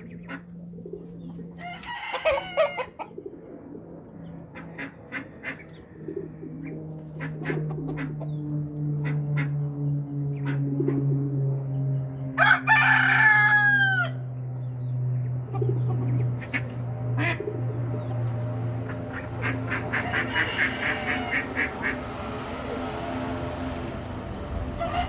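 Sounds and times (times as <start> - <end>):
chicken clucking: 0.0 - 3.2, 18.8 - 22.0
rooster crowing: 1.6 - 3.0, 12.4 - 14.2, 19.9 - 21.8, 24.5 - 25.0
low hum: 3.1 - 25.0.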